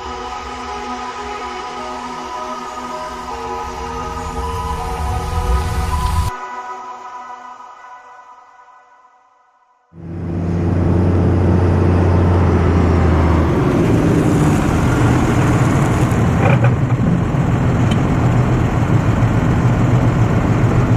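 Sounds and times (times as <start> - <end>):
farm machine engine running: 10.0 - 20.9.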